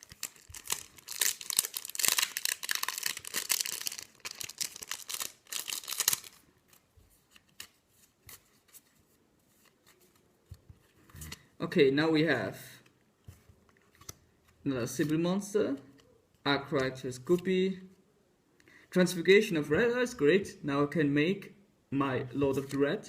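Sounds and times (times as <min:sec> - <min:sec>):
foil wrapper crinkling and tearing: 0:00.0 - 0:06.4.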